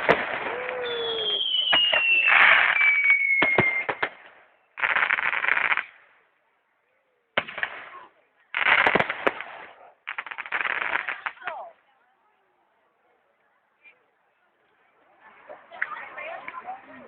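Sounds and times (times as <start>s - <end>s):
fireworks crackling: 0.0s - 6.2s, 7.4s - 11.9s.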